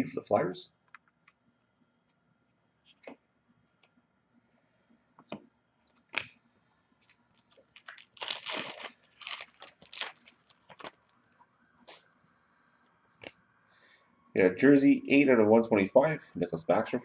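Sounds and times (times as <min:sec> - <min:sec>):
foil wrapper crinkling and tearing: 0:07.0 - 0:11.2.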